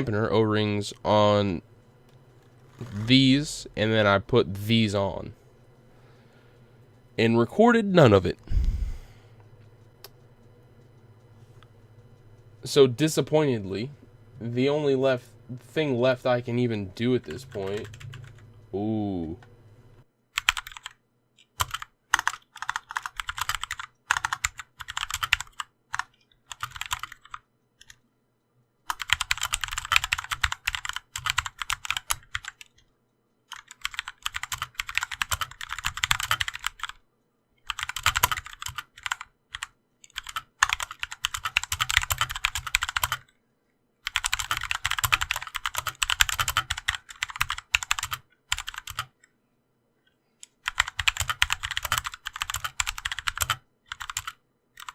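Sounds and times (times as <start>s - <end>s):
typing on mechanical keyboard: 17.5s - 18.4s, 20.4s - 28.0s, 28.9s - 32.9s, 33.5s - 37.0s, 37.6s - 43.3s, 44.0s - 49.2s, 50.5s - 54.9s.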